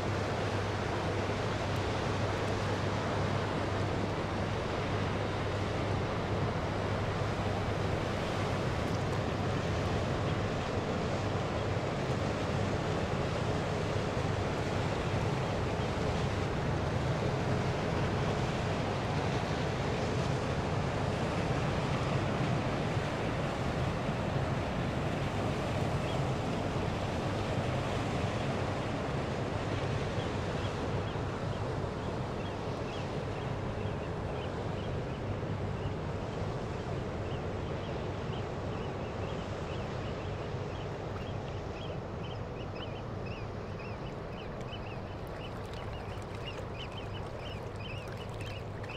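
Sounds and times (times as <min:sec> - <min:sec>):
water lapping against stone: 0:44.5 - 0:48.9.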